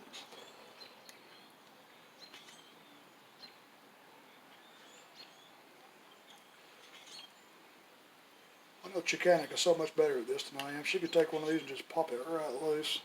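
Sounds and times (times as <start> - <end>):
faint bird chirps: 0.0 - 7.6.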